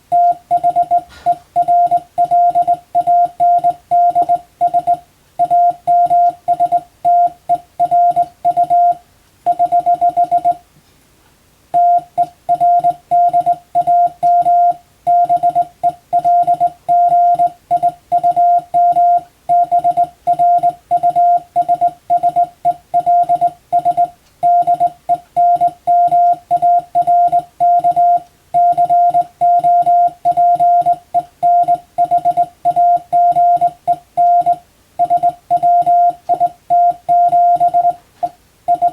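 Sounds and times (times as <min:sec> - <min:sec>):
morse code beeps: 0:00.1 - 0:10.6, 0:11.8 - 0:38.9.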